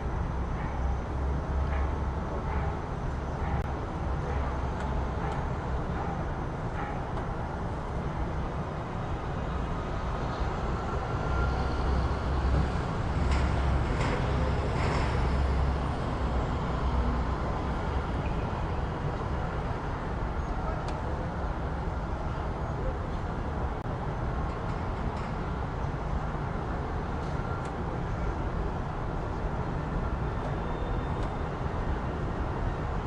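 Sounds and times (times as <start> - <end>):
traffic noise: 0.0 - 33.0
vehicle rumbling: 0.0 - 33.0.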